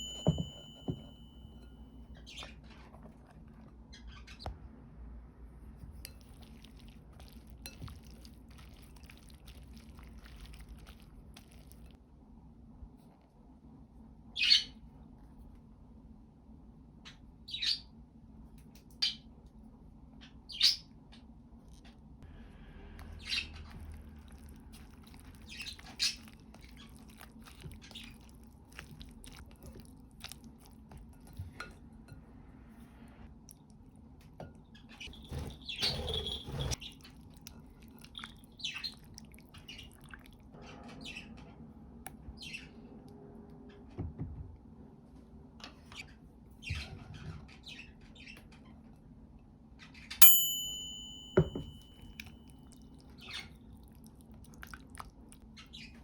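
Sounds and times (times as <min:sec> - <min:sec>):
utensils and dishes clattering: 0:00.0 - 0:01.3
sharp ringing tone: 0:00.0 - 0:01.8, 0:50.2 - 0:52.3.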